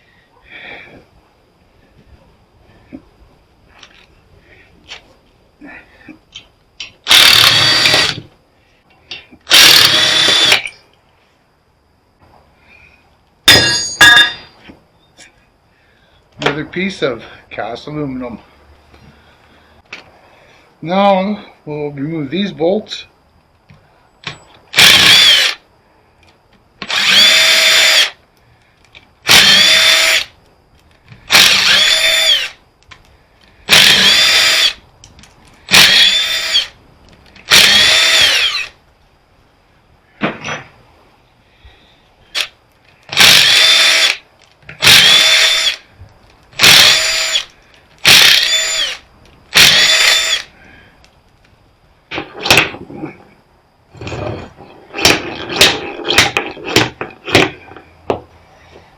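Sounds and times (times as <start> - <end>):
power driver spinning: 7.1 - 8.2, 9.5 - 10.7, 24.8 - 25.6, 26.8 - 28.2, 29.3 - 30.3, 31.3 - 32.6, 33.7 - 34.8, 35.7 - 36.7, 43.1 - 44.2.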